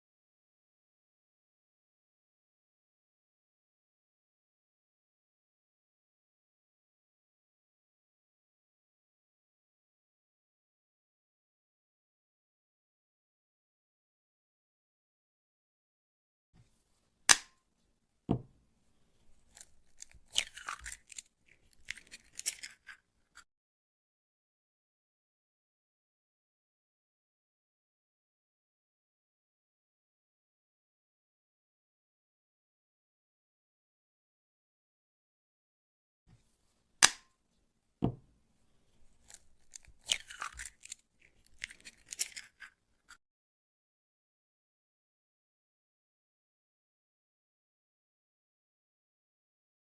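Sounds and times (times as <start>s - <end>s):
dull knock: 18.3s - 18.5s, 38.0s - 38.2s
egg cracking against edge: 19.5s - 22.9s, 39.2s - 42.7s
eggshell crackling clicks: 39.2s - 42.7s.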